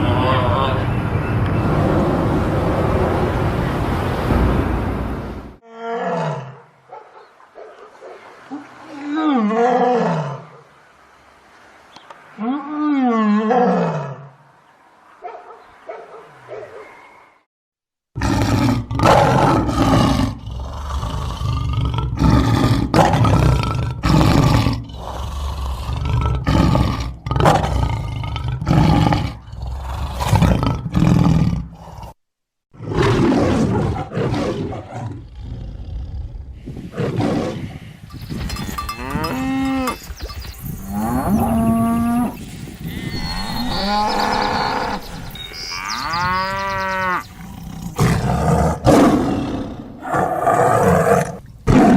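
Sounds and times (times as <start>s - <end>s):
large animals calling loudly: 40.9s - 49.4s.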